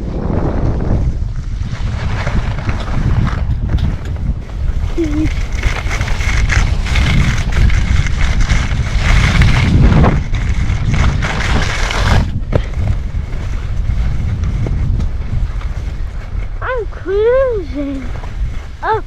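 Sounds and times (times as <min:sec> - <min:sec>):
wind rushing over microphone: 0:00.0 - 0:19.0
skis hissing and scraping on snow: 0:03.9 - 0:09.9, 0:10.6 - 0:14.4.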